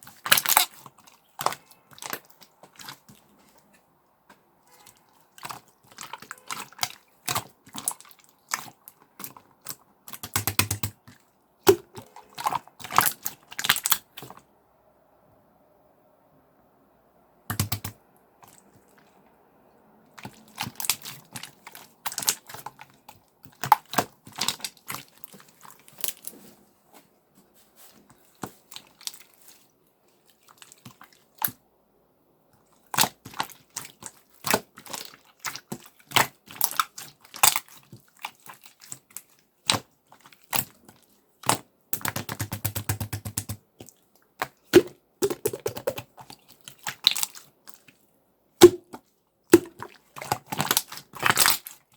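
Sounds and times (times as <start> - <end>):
slime clicking and popping: 10.1 - 11.0, 17.5 - 18.0, 44.4 - 46.2, 48.6 - 51.7.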